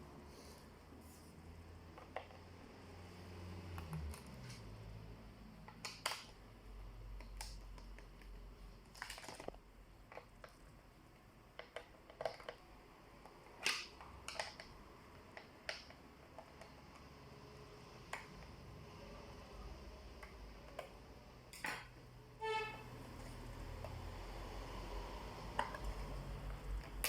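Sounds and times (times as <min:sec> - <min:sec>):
small tools clicking and tapping: 0:11.5 - 0:12.6, 0:13.2 - 0:17.1.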